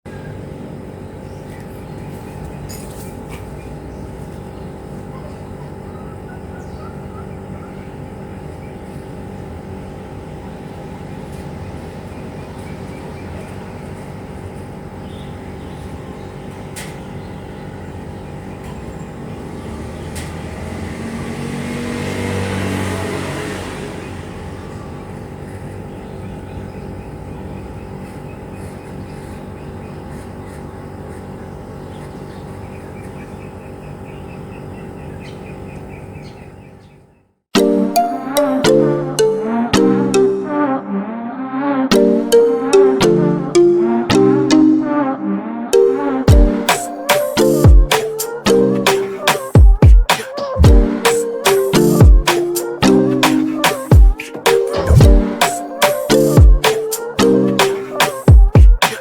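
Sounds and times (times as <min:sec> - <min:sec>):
low background hum: 0:00.1 - 0:19.8, 0:24.3 - 0:37.2
vehicle passing: 0:18.8 - 0:27.9.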